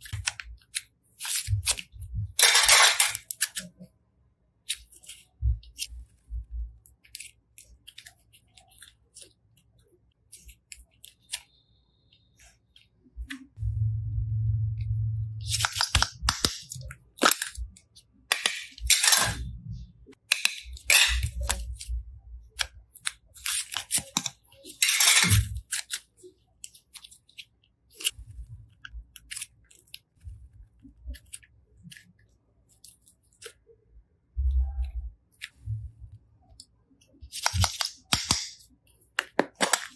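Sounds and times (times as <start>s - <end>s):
dull low thumps: 13.6s - 15.4s
slime squishing: 15.4s - 19.4s.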